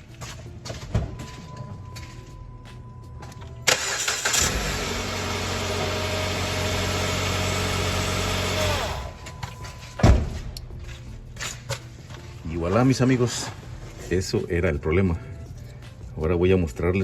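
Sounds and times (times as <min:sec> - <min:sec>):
car engine cranking and running: 0:03.7 - 0:09.2.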